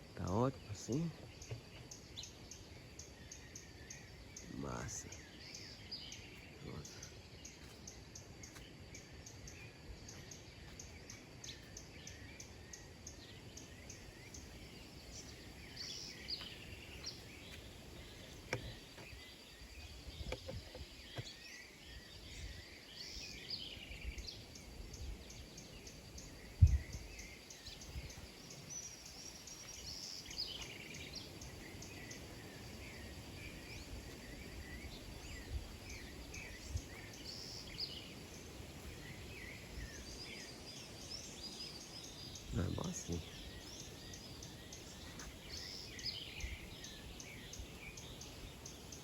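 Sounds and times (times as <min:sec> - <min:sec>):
small birds chirping: 0:00.0 - 0:49.0.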